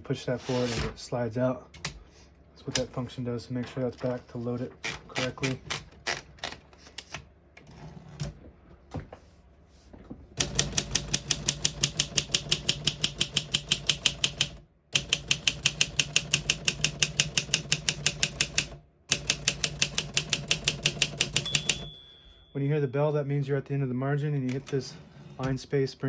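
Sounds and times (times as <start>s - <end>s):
manual typewriter typing: 4.8s - 7.2s, 10.4s - 22.0s.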